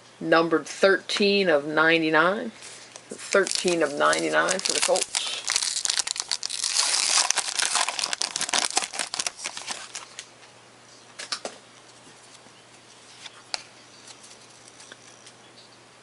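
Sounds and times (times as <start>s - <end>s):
card pack wrapper tearing and crinkling: 3.2s - 10.3s.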